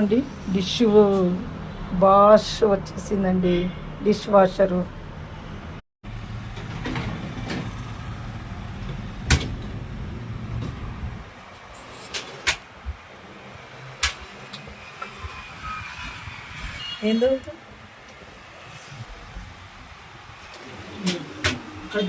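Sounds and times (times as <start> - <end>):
low rumbling hum: 4.9 - 11.4
sharp clicks and knocks: 14.0 - 15.2.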